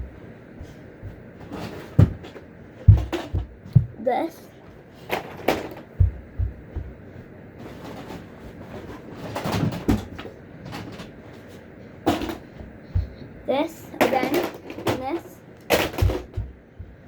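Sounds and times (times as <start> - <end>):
dull thumps: 0.0 - 4.2, 5.4 - 7.3, 12.1 - 13.3, 15.7 - 17.0
plastic clattering: 5.1 - 6.2, 14.0 - 16.9.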